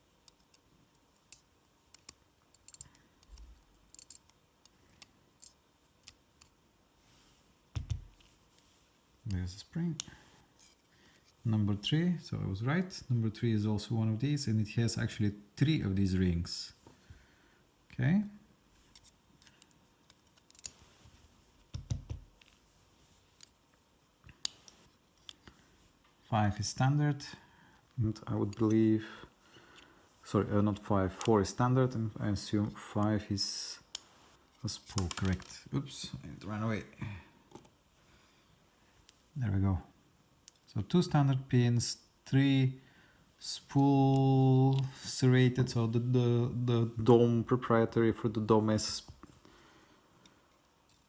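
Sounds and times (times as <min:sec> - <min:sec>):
small metallic clicks and taps: 0:00.2 - 0:06.5.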